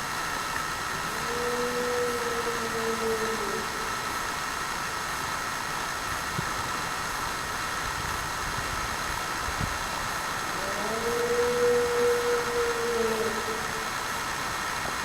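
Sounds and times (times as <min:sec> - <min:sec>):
night-time hiss: 0:00.0 - 0:15.0
low animal call: 0:00.8 - 0:04.2, 0:10.5 - 0:14.2.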